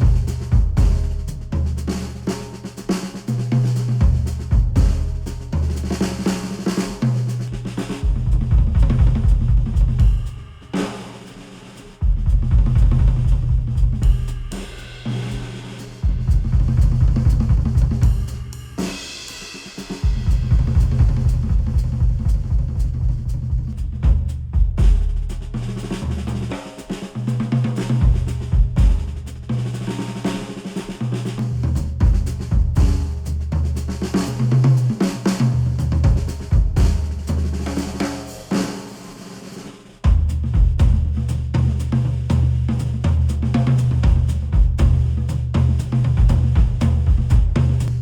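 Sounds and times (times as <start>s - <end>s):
pop music with drum kit: 0.0s - 33.3s.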